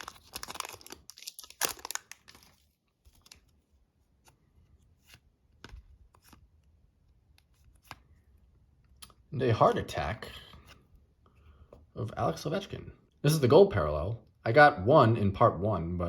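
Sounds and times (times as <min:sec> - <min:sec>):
card pack rustling and tearing: 0:00.0 - 0:03.6.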